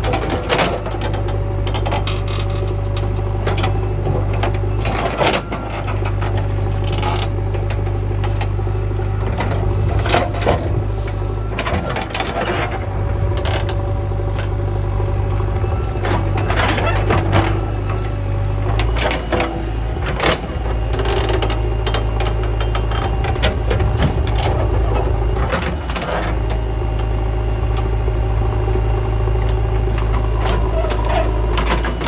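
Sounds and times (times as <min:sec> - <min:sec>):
diesel engine running: 0:00.0 - 0:32.0
metal clanks and rattles: 0:18.6 - 0:27.0.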